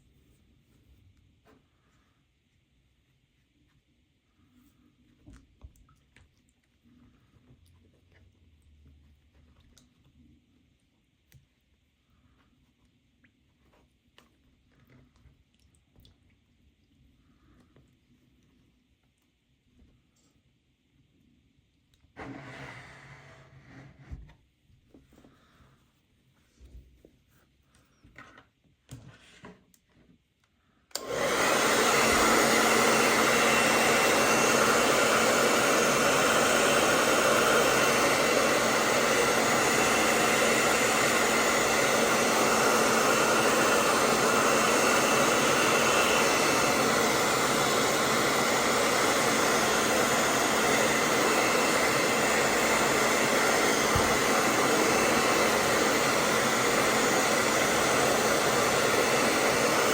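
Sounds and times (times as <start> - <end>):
hair dryer blowing: 30.9 - 59.9.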